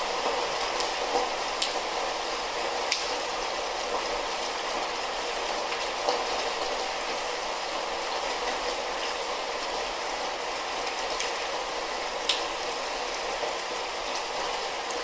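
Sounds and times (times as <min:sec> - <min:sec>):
light rain falling: 0:00.0 - 0:15.0.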